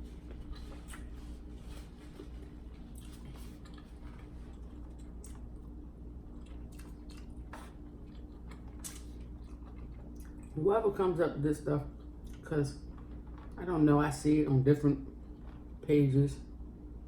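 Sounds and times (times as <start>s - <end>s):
person chewing food: 0.0s - 10.6s, 11.9s - 13.6s, 15.1s - 15.8s
steady low hum: 0.0s - 17.0s.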